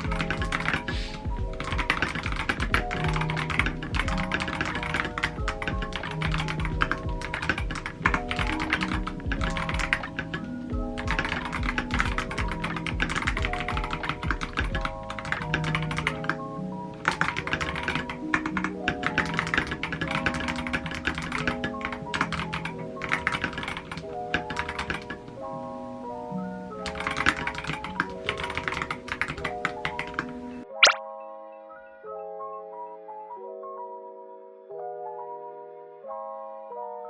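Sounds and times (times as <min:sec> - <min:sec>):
mechanical keyboard typing: 0:00.0 - 0:16.4, 0:17.0 - 0:25.2, 0:26.8 - 0:31.0
background music: 0:00.0 - 0:37.0.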